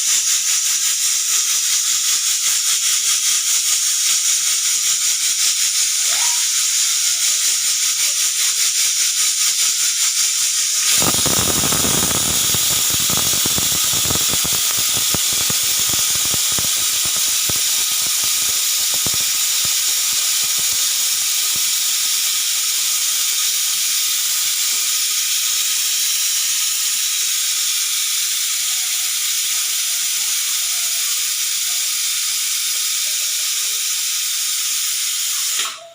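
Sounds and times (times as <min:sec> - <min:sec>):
pressure cooker whistling: 0:00.0 - 0:35.9.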